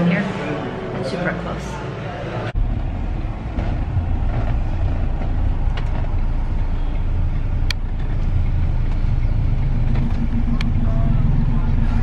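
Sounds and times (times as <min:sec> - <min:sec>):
low rumble of motor traffic: 0:02.0 - 0:12.0.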